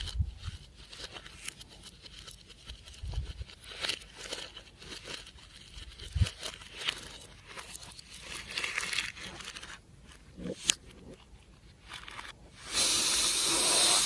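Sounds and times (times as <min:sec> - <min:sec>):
loud steady hiss: 0:12.5 - 0:14.0.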